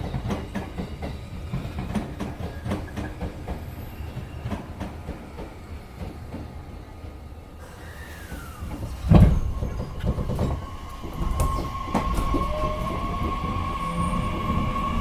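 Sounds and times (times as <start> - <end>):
train wheels rumbling: 0.0 - 15.0
train motor whine: 7.8 - 15.0
wheels clunking on track: 8.2 - 13.4.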